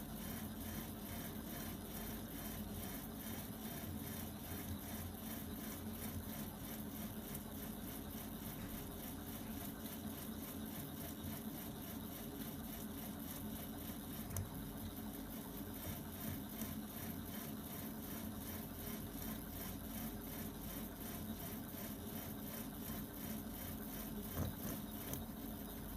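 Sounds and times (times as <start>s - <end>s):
printer motor whir: 0.0s - 25.9s.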